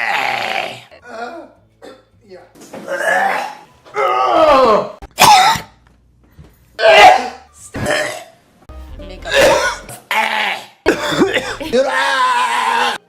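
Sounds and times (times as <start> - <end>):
men coughing: 1.0 - 2.1, 5.2 - 5.7, 9.3 - 9.9, 10.9 - 12.0.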